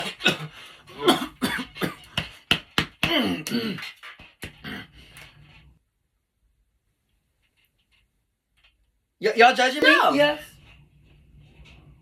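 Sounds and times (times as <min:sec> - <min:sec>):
woman coughing: 0:00.0 - 0:02.0.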